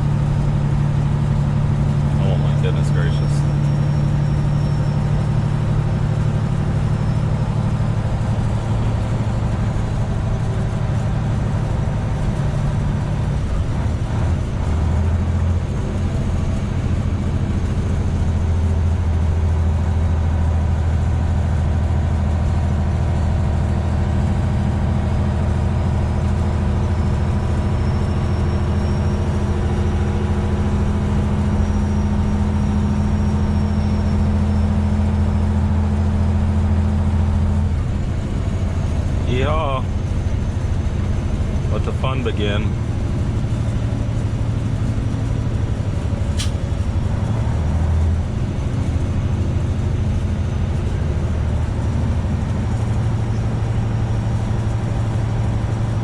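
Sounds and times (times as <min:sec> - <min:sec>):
diesel truck engine droning: 0:00.0 - 0:56.0.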